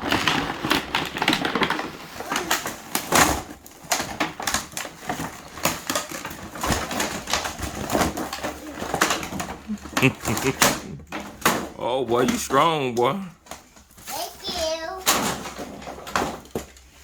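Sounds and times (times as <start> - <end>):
plastic toy parts clicking and rattling: 0.0 - 12.6.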